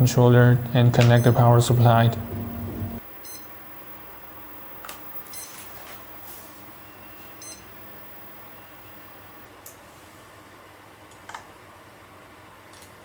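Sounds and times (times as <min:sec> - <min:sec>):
high electronic chirps: 0:00.0 - 0:09.4
faint low hum: 0:00.0 - 0:09.7.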